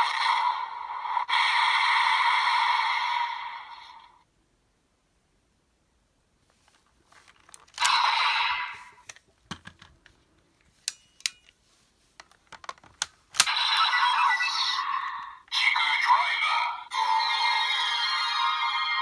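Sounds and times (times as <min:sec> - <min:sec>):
plastic toy buckle clicks: 0:07.2 - 0:08.1, 0:08.8 - 0:10.0, 0:10.8 - 0:11.5, 0:12.2 - 0:14.4.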